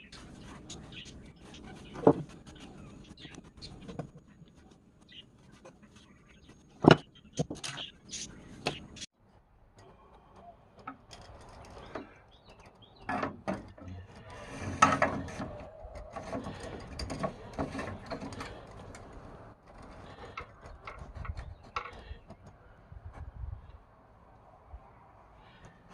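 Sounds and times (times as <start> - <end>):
metal tools clicking and scraping: 10.8 - 22.4.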